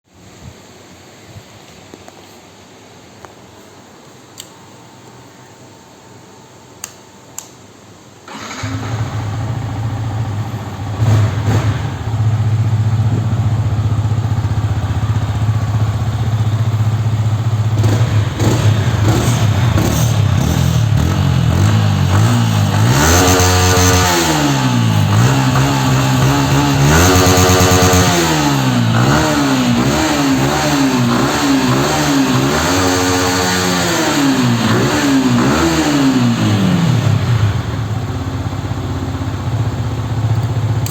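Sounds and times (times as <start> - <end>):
motorcycle engine idling and revving: 8.3 - 40.9.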